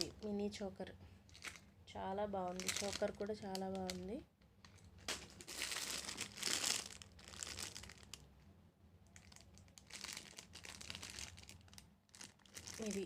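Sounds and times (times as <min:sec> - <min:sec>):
packaging crinkling: 0:01.3 - 0:01.6, 0:02.5 - 0:04.0, 0:04.6 - 0:08.2, 0:09.1 - 0:13.0.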